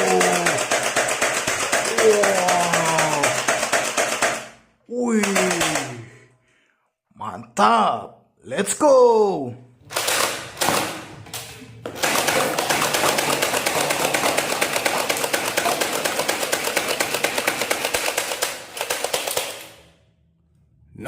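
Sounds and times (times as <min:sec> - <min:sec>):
toy machine gun firing: 0:00.0 - 0:04.6, 0:05.2 - 0:06.0, 0:09.9 - 0:11.0, 0:12.0 - 0:19.9.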